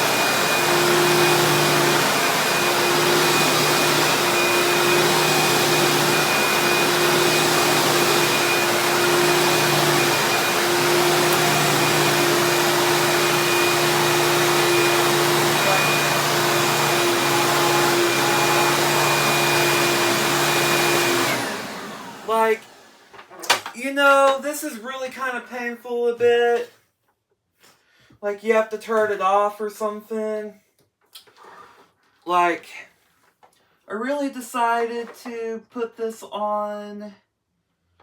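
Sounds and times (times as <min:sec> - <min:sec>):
vacuum cleaner running: 0:00.0 - 0:23.6.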